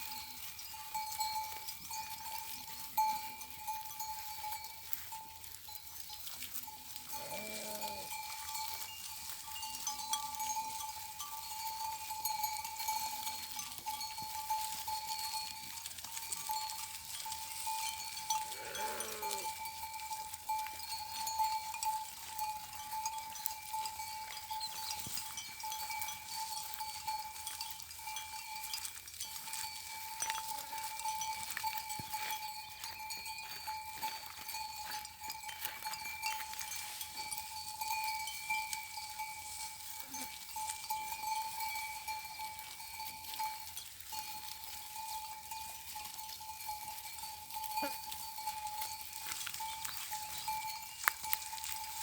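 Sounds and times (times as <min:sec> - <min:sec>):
livestock bells clanking: 0:00.0 - 0:52.0
animal bleat: 0:07.1 - 0:08.2, 0:18.5 - 0:19.6.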